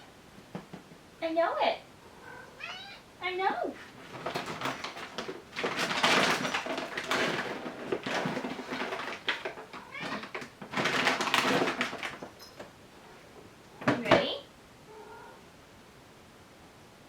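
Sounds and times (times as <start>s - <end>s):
rustling and clattering: 0.3s - 1.2s, 3.7s - 14.3s
cat meowing: 2.1s - 3.1s, 9.8s - 10.3s, 14.9s - 15.4s.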